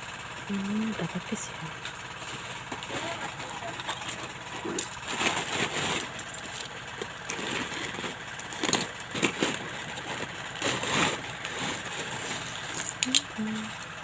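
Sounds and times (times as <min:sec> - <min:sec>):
engine-like hum: 0:00.0 - 0:14.0
packaging rustling: 0:02.2 - 0:13.3.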